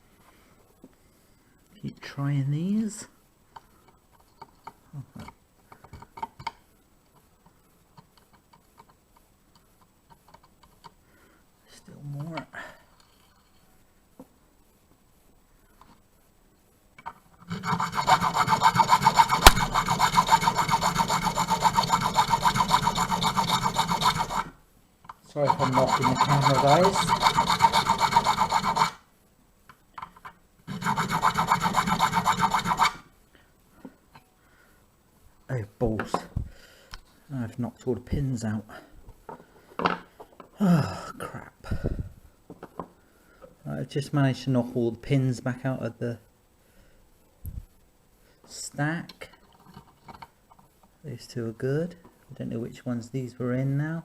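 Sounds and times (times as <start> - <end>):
hand file rasping on metal: 17.5 - 24.6, 25.3 - 29.0, 30.7 - 33.0.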